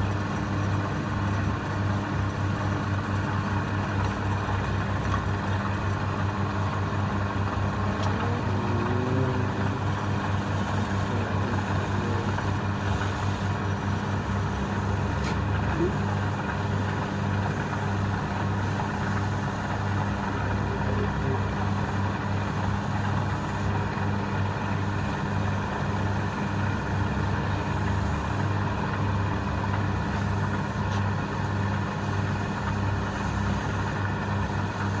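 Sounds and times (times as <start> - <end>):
wood lathe motor humming: 7.0 - 29.0.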